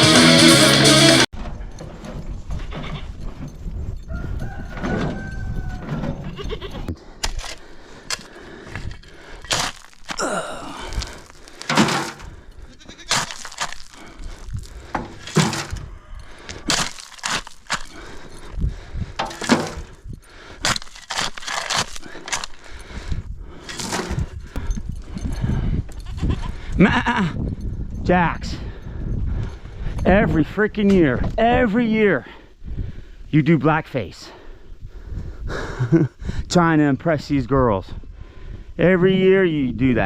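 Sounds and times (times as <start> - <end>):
goat bleating: 6.3 - 6.9, 12.7 - 13.2, 26.0 - 27.2
sharp cracks and knocks: 9.4 - 10.2, 10.9 - 12.3, 13.1 - 14.1, 14.9 - 15.8, 16.5 - 18.0, 19.2 - 20.0, 20.6 - 22.7.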